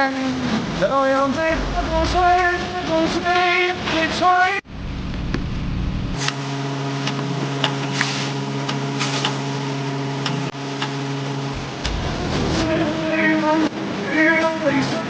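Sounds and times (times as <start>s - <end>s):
low rumble: 1.3s - 3.4s, 4.7s - 6.2s, 11.5s - 13.9s.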